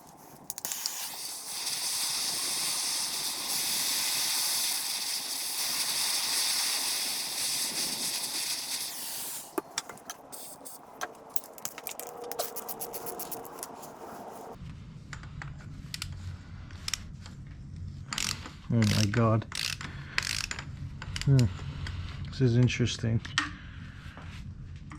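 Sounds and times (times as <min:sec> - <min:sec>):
metallic clicks of hand tools: 0:00.0 - 0:00.9, 0:09.6 - 0:13.8, 0:18.1 - 0:21.5
aerosol spray can hissing: 0:00.0 - 0:14.5.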